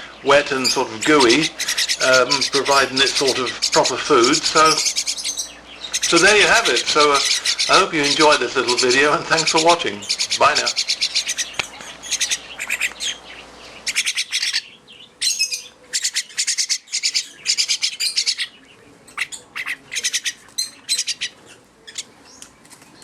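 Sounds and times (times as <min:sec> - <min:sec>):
baby birds begging calls: 0:00.0 - 0:22.4.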